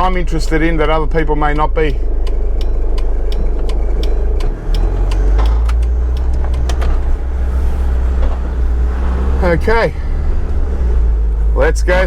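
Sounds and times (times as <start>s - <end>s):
sharp rattling clicks: 0.0s - 7.5s
engine and road rumble: 0.0s - 12.0s.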